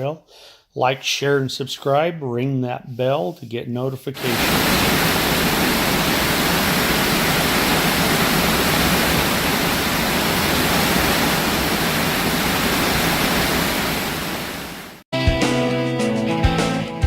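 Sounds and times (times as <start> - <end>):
waterfall rushing: 4.2 - 15.0.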